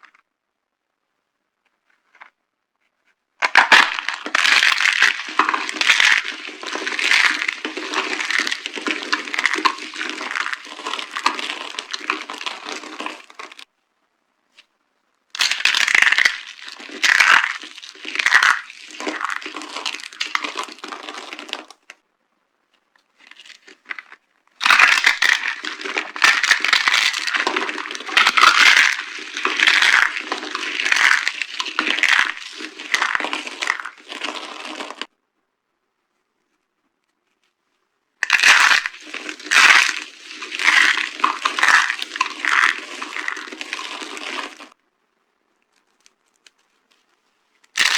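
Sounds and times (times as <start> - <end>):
dry soap crunching: 3.4 - 13.6, 15.4 - 22.0, 23.1 - 35.1, 38.2 - 44.8, 45.6 - 47.9.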